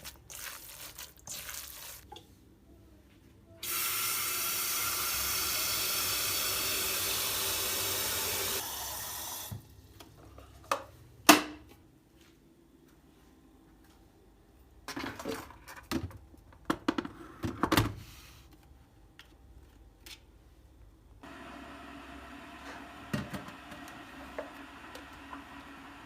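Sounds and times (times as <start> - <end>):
water running: 0.0 - 2.2, 3.6 - 9.6, 21.2 - 26.0.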